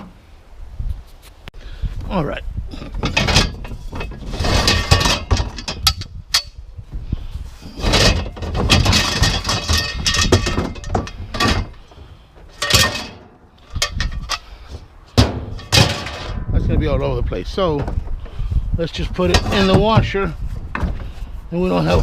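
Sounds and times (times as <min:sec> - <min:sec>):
scrap metal parts clattering: 0:03.0 - 0:06.5, 0:07.6 - 0:16.4, 0:19.1 - 0:20.2.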